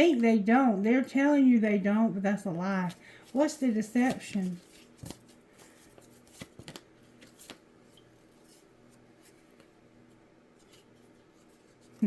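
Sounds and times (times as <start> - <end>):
faint steady hum: 0.0 - 12.0
cards snapping and rustling: 4.0 - 7.6.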